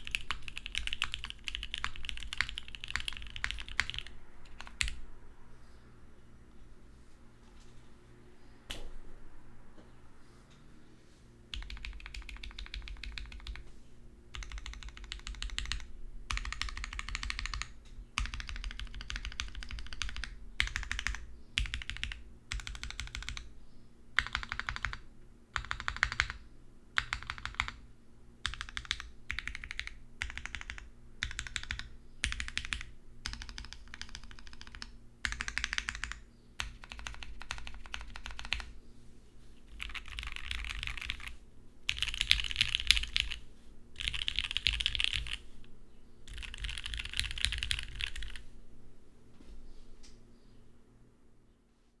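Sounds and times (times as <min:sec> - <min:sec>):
mechanical keyboard typing: 0:00.0 - 0:05.0, 0:11.5 - 0:13.6, 0:14.3 - 0:23.5, 0:24.2 - 0:25.0, 0:25.6 - 0:26.4, 0:27.0 - 0:27.8, 0:28.4 - 0:38.7, 0:39.8 - 0:43.4, 0:44.0 - 0:45.4, 0:46.3 - 0:48.4.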